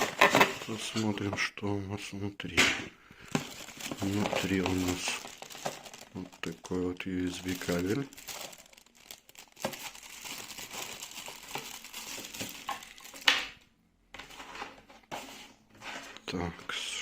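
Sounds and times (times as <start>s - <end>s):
plastic packaging crinkling: 0.0s - 0.9s, 3.1s - 13.6s
sharp plastic crackle: 3.1s - 13.6s.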